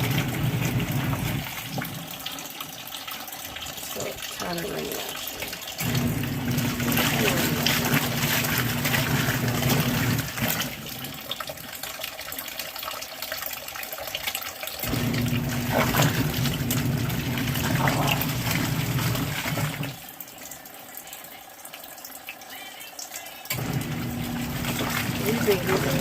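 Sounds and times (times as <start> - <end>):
motor hum: 0.0 - 1.5, 5.8 - 10.6, 14.8 - 20.0, 23.5 - 26.0
water running into a tub: 0.0 - 26.0.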